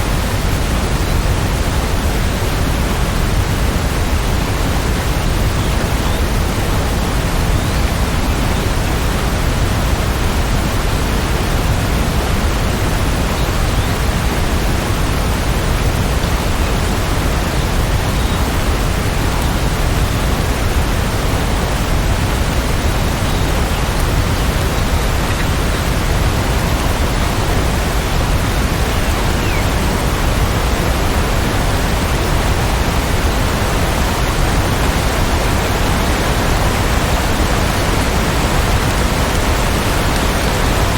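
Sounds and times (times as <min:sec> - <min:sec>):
steady rain hiss: 0:00.0 - 0:40.9.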